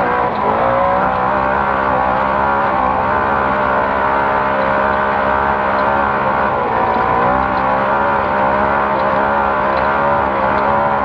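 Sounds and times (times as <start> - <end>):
race car engine revving high: 0.0 - 11.0.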